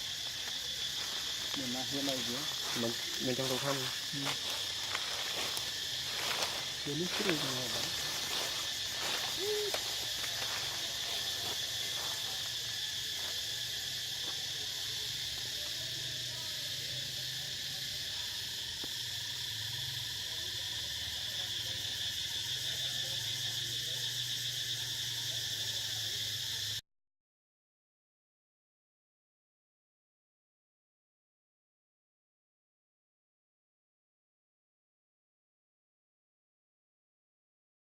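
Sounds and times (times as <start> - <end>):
insects droning: 0.0 - 26.8.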